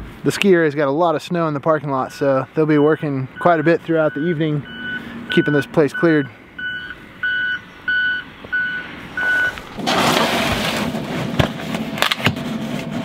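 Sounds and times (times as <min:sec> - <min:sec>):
reversing alarm beeping: 0:02.1 - 0:09.6
snowplow rumble: 0:08.9 - 0:13.0.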